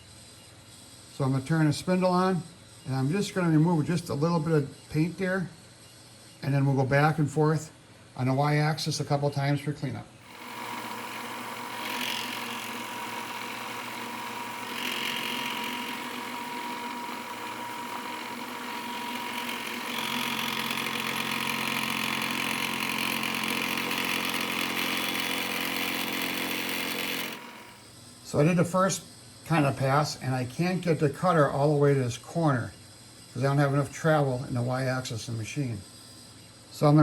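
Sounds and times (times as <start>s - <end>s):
cutter cutting steel: 10.2s - 27.8s
milling machine hum and whine: 10.3s - 27.8s.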